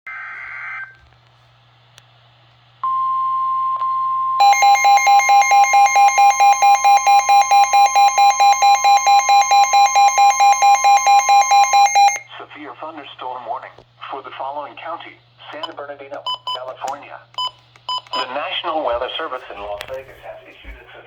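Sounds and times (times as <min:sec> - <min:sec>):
loud pulsing electronic beep: 0:04.4 - 0:12.2
steady warning alarm tone: 0:04.4 - 0:12.3.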